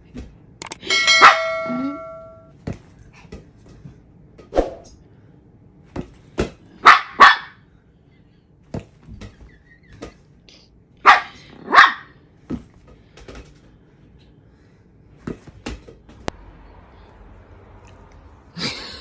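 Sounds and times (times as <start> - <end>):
dog barking: 6.8 - 7.6, 11.0 - 12.1.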